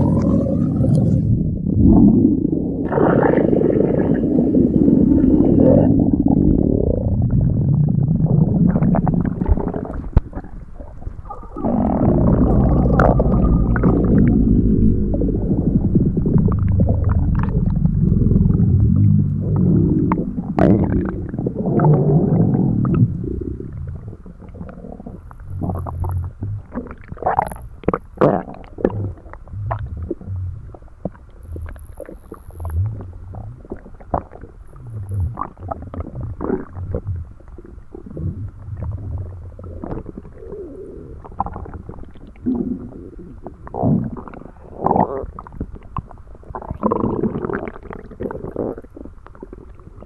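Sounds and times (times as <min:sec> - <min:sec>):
stomach growling and gurgling: 0:00.0 - 0:50.0.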